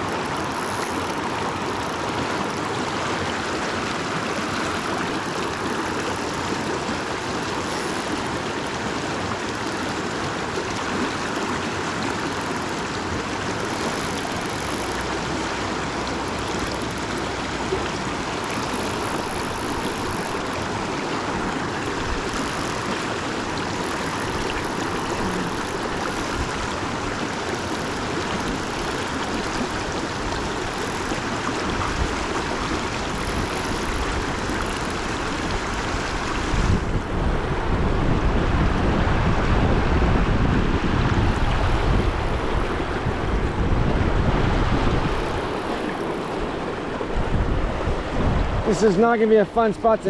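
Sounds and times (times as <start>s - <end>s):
river current rushing: 0.0s - 50.0s
wind buffeting microphone: 15.1s - 49.2s.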